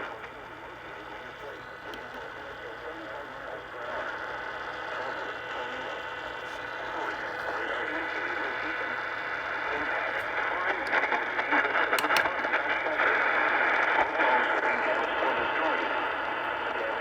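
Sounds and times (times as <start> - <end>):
faint voices: 0.0 - 17.0
radio static hiss: 0.0 - 17.0
sharp clicks: 11.9 - 12.4.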